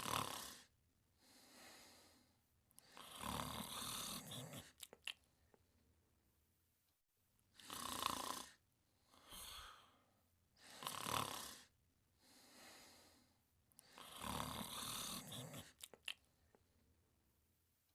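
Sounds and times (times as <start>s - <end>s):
loud snores: 0.0s - 0.7s, 2.8s - 4.8s, 7.6s - 8.6s, 10.6s - 11.7s, 13.8s - 15.9s
soft breath out: 1.2s - 3.1s, 8.9s - 10.8s, 12.2s - 14.1s.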